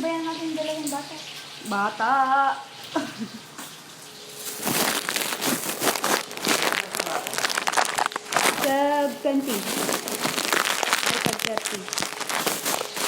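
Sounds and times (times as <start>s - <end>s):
fish frying in hot oil: 6.2s - 8.6s.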